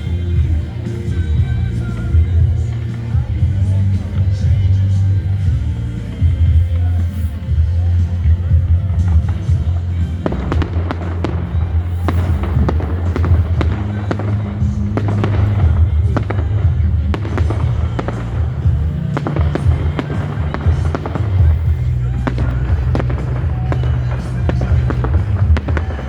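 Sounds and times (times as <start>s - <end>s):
fireworks bangs and crackles: 0.0s - 26.0s
music with heavy bass: 0.0s - 26.0s.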